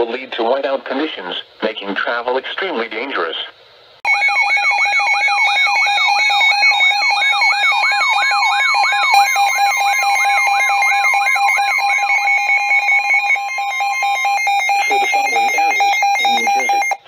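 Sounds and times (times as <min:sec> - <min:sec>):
electronic alert alarm tones: 0:04.1 - 0:17.0
falling warble: 0:04.4 - 0:17.0.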